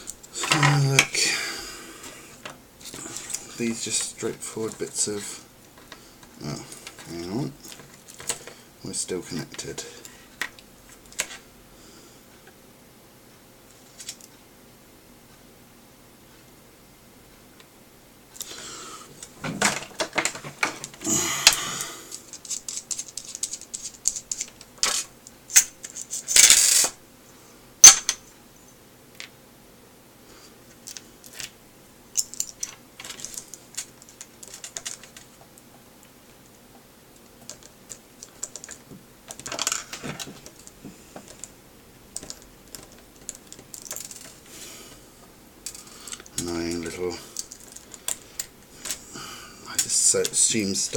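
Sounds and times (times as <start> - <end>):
plastic parts clicking and tapping: 5.8 - 8.6, 19.2 - 26.6, 32.2 - 35.8, 36.7 - 44.4, 45.6 - 49.0.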